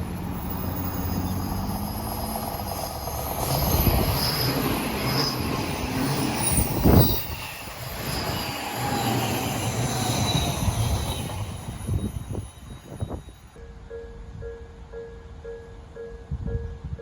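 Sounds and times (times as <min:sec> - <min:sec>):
electric train passing: 0:00.0 - 0:17.0
high squeal of wheels: 0:00.1 - 0:13.6.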